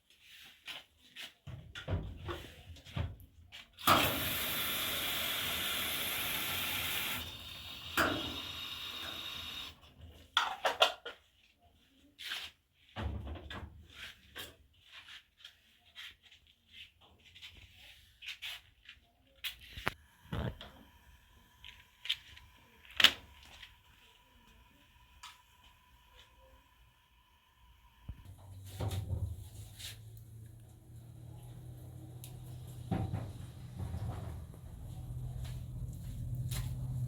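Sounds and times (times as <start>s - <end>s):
spraying hiss: 3.8s - 9.8s.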